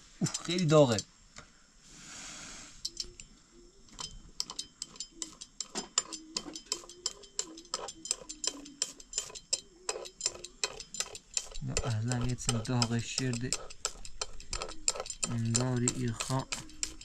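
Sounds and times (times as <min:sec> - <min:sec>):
faint steady hum: 0:00.0 - 0:17.0
metal utensil scraping a pan: 0:04.4 - 0:17.0.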